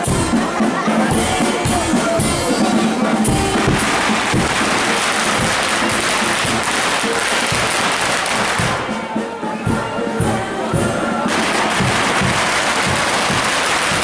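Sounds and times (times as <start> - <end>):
band music with drums: 0.0 - 14.0
fireworks crackling: 3.2 - 8.9, 10.8 - 14.0
sharp bangs: 3.2 - 8.9, 11.3 - 14.0.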